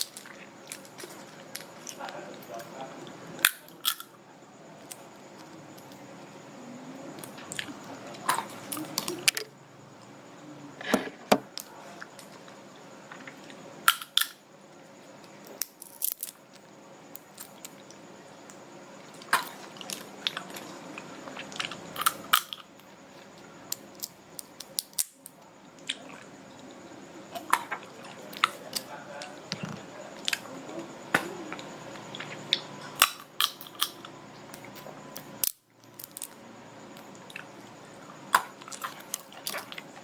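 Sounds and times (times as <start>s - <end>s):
soft chewing: 25.8s - 26.7s
seeds cracking between teeth: 34.8s - 36.4s.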